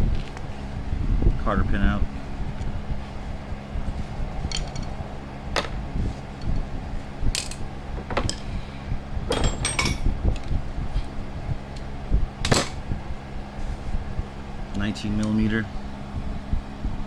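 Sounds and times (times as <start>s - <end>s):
cooling fan humming: 0.0s - 17.0s
hand tools knocking on metal: 9.3s - 10.1s.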